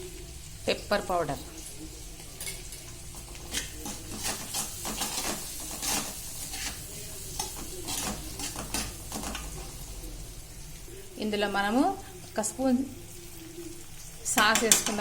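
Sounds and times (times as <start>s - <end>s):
onions sizzling in oil: 0.0s - 15.0s
spatula scraping a pan: 2.2s - 9.9s.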